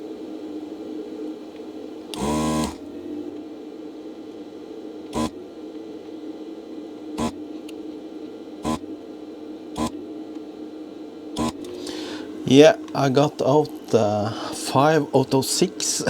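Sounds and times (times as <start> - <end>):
steady low hum: 0.0 - 16.0
vacuum pump buzzing: 2.1 - 3.4, 5.1 - 5.5, 7.0 - 7.6, 8.5 - 9.0, 9.6 - 10.2, 11.2 - 12.7.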